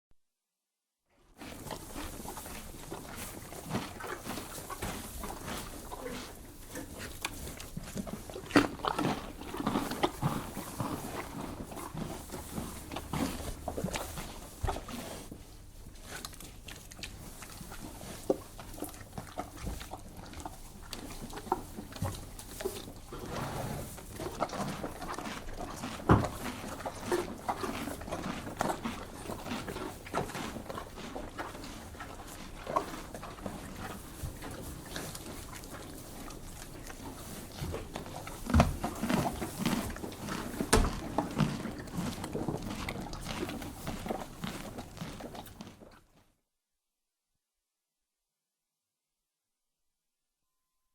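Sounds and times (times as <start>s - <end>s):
horse chewing carrot: 1.3s - 46.2s.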